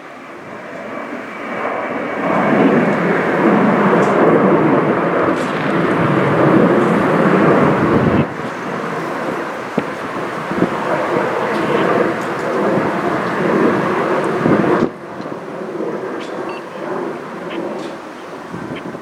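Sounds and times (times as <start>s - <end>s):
jet aircraft passing: 0.0s - 19.0s
faint high whine: 10.5s - 19.0s.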